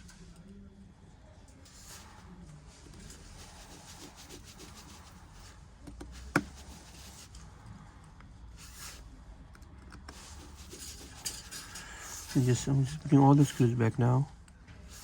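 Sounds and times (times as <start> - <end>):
small tools rubbing and scraping: 10.1 - 13.8.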